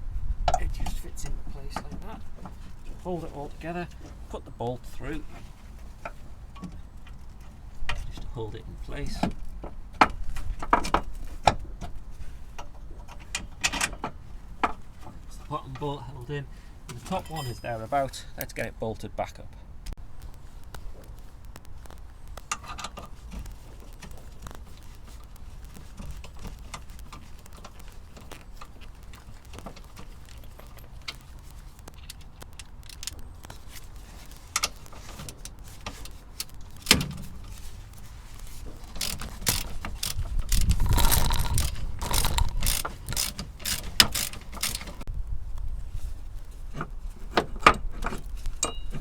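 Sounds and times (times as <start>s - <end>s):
socket ratchet clicking: 39.0s - 45.0s.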